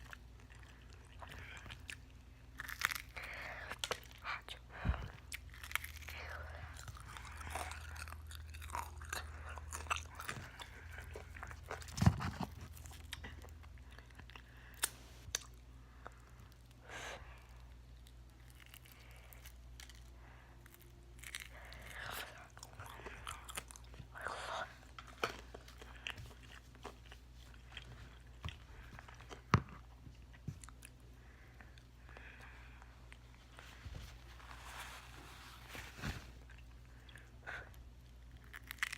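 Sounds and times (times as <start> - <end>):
crunching fried chicken: 0.0 - 4.2, 5.2 - 6.2, 6.8 - 15.6, 18.0 - 23.9, 38.2 - 38.9.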